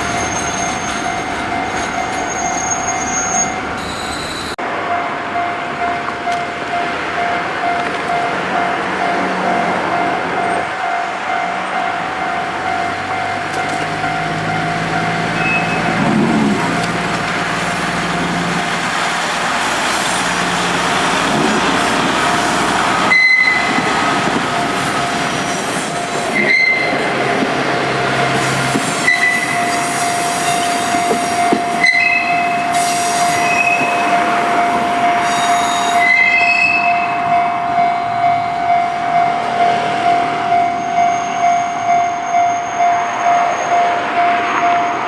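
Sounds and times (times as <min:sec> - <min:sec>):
train wheel squeals: 0:00.0 - 0:04.6, 0:14.5 - 0:16.0, 0:24.9 - 0:26.9, 0:28.4 - 0:34.2, 0:35.2 - 0:37.2, 0:40.5 - 0:45.0
diesel train running: 0:00.0 - 0:45.0
level crossing alarm ringing: 0:29.0 - 0:45.0.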